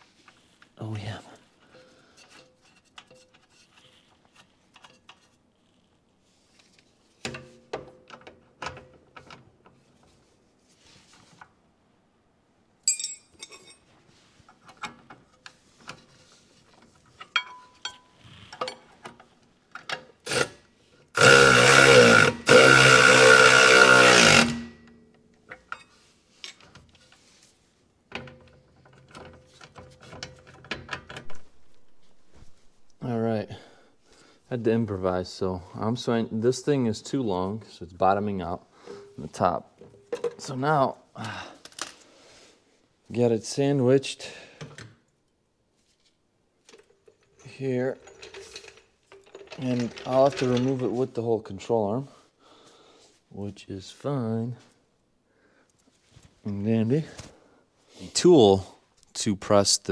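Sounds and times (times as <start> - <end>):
hand tools clicking and knocking: 12.9 - 13.8, 17.1 - 20.6, 21.2 - 24.9, 46.7 - 51.0
power tool running: 20.3 - 20.6, 21.2 - 24.9.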